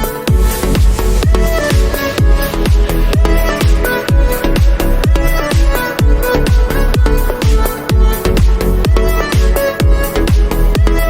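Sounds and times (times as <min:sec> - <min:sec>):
synth notes: 0:00.0 - 0:08.1
electronic dance music: 0:00.0 - 0:11.0
kick drum beat: 0:00.0 - 0:11.0.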